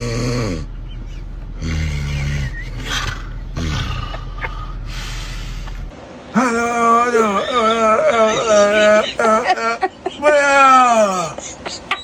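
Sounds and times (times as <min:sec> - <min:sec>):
person snoring loudly: 0:00.0 - 0:00.7, 0:01.6 - 0:05.9
breathy hissing: 0:00.0 - 0:06.6.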